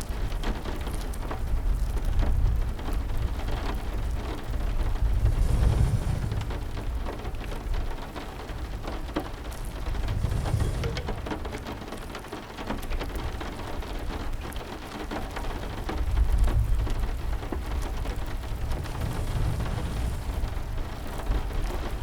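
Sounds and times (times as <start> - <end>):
steady rain: 0.0 - 22.0
sharp crackles: 3.7 - 22.0
thunder rumbling: 3.8 - 14.3, 15.3 - 22.0.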